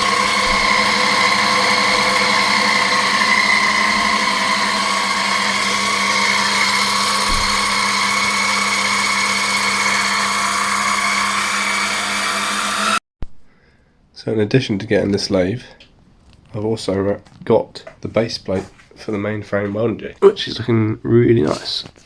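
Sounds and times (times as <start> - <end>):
lathe motor humming and whining: 0.0 - 13.0.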